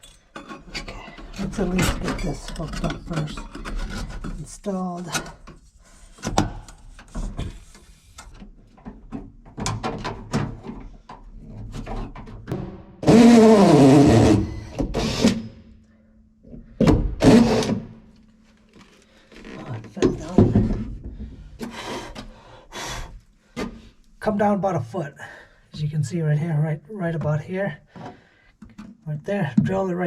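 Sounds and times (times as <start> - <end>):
parts clattering and knocking: 0.0 - 13.2, 14.8 - 22.4
power drill running: 13.0 - 15.5, 17.2 - 17.8.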